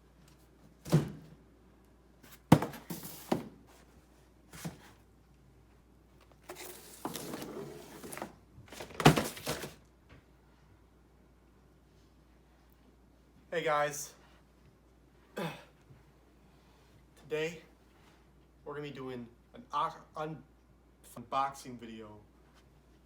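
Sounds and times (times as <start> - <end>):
rustling or scraping: 6.4 - 9.8.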